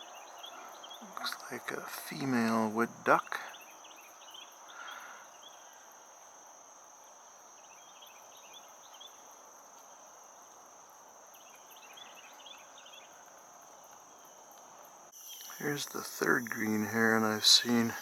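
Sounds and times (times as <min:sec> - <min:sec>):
high-pitched insect chorus: 0:00.0 - 0:18.0
small bird chirps: 0:15.1 - 0:18.0.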